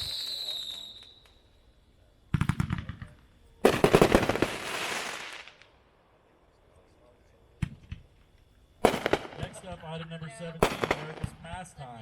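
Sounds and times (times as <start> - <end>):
firework whistle: 0.0 - 5.7
firework cracks: 2.3 - 5.8, 8.8 - 9.7, 10.6 - 11.6.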